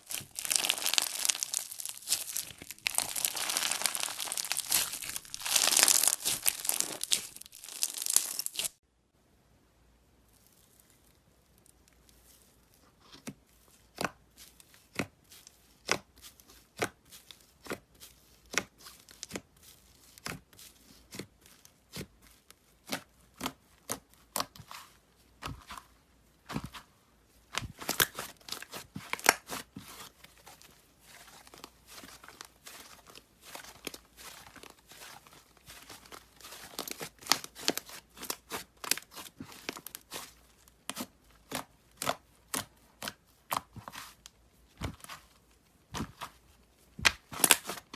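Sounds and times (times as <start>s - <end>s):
slime popping and crackling: 0.0s - 8.8s, 27.6s - 29.7s, 31.4s - 44.2s, 47.0s - 47.8s.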